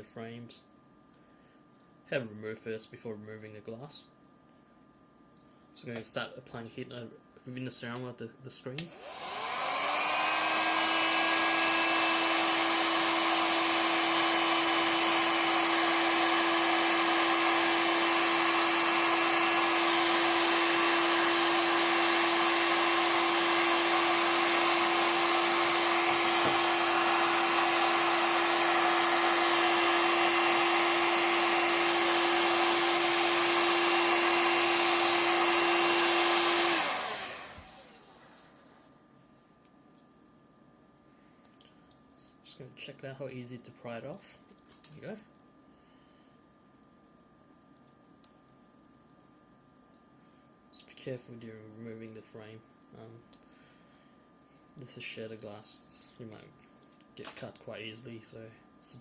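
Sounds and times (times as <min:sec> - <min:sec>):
heat gun blowing with motor hum: 0:08.8 - 0:38.9.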